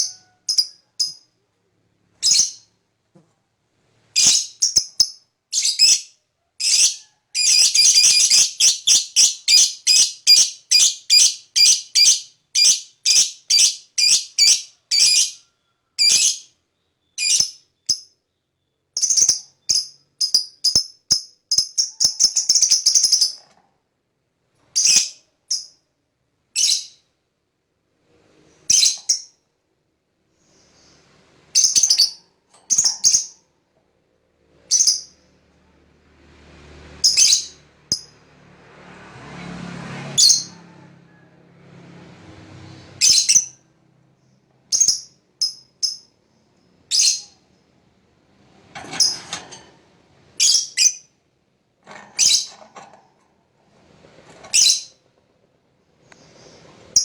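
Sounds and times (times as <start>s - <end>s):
lovebird shrill chirps: 4.2s - 15.4s, 17.1s - 18.1s, 31.5s - 33.4s, 43.0s - 43.6s, 44.7s - 46.1s, 46.9s - 47.4s, 50.4s - 51.1s.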